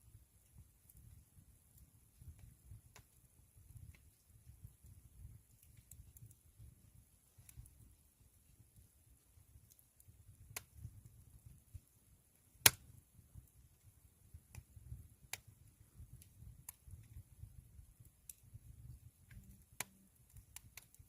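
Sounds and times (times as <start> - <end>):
wood fire crackling and popping: 0.1 - 21.0
loud fire snap: 12.5 - 13.6.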